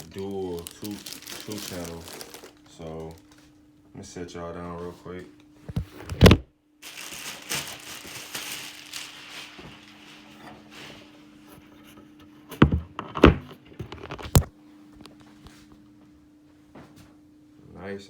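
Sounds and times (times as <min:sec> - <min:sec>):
phone being handled rustling: 0:00.0 - 0:03.4
faint steady hum: 0:00.0 - 0:18.0.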